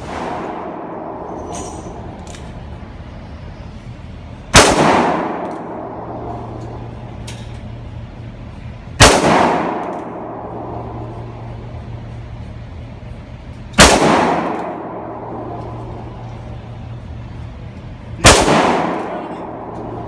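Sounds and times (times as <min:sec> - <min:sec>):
handgun shots echoing: 0:04.6 - 0:05.9, 0:09.0 - 0:10.3, 0:13.8 - 0:16.0, 0:18.2 - 0:20.0.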